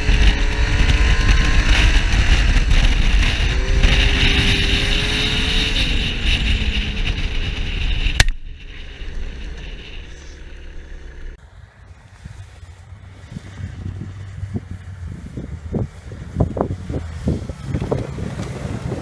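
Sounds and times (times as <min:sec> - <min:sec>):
snowmobile engine running: 0:00.0 - 0:11.4, 0:12.0 - 0:19.0
low rumble: 0:00.0 - 0:11.6
rushing noise: 0:00.0 - 0:12.2
sharp click: 0:08.2 - 0:08.5.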